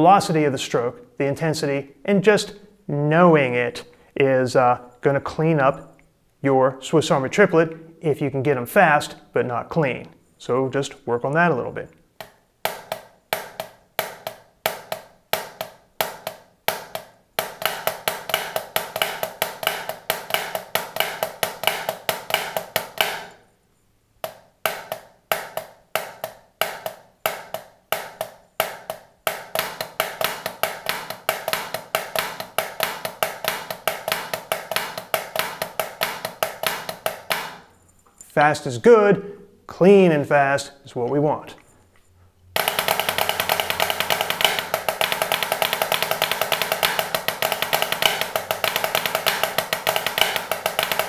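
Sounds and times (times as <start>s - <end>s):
drumsticks on practice pad: 12.1s - 23.4s, 24.2s - 38.3s, 42.6s - 51.0s.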